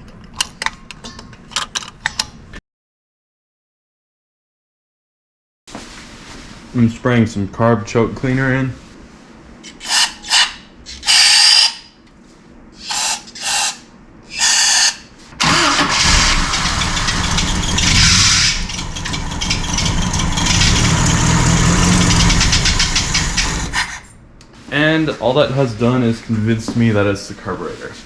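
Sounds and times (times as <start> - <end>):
car engine starting and running: 15.4 - 23.9.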